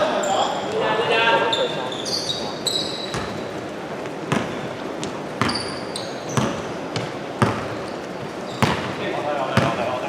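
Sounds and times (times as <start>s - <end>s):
sneaker squeaks: 0.0s - 3.6s, 4.3s - 9.0s
basketball bouncing on court floor: 3.0s - 3.4s, 4.2s - 10.0s.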